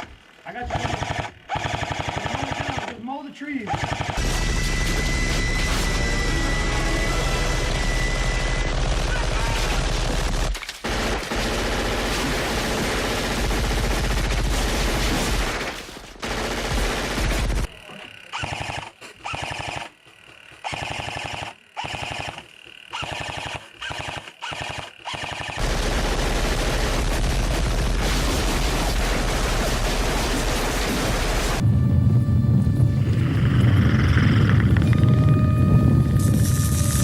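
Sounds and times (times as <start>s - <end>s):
airsoft guns firing: 0.7s - 3.0s, 3.7s - 5.0s, 8.7s - 20.0s, 20.6s - 31.6s.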